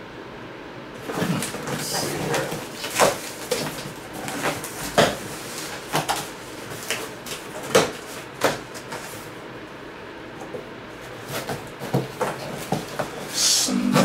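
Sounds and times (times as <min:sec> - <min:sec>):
packaging rustling: 0:01.0 - 0:09.2.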